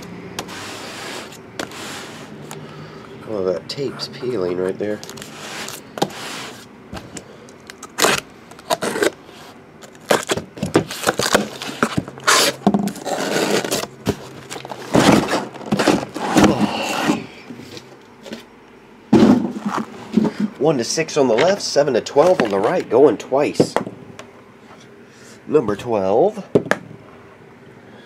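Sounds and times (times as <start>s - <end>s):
packing tape being peeled: 5.0s - 6.6s, 7.5s - 9.2s, 9.8s - 16.0s.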